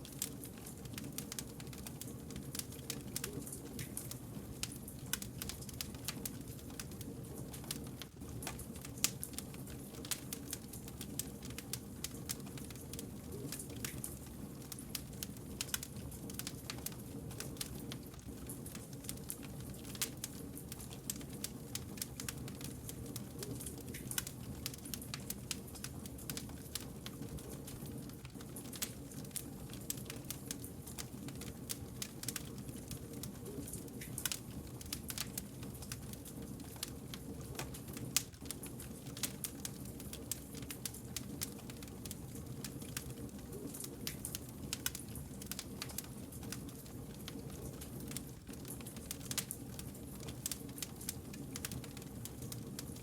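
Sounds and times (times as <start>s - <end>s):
campfire crackling: 0.0s - 53.0s
fire pops and snaps: 0.0s - 53.0s.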